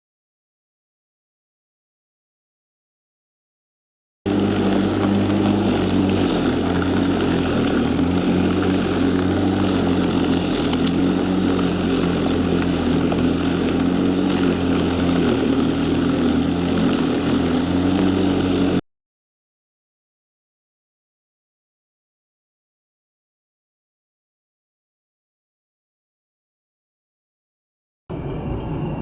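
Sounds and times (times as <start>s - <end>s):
engine drone: 4.3s - 18.8s, 28.1s - 29.0s.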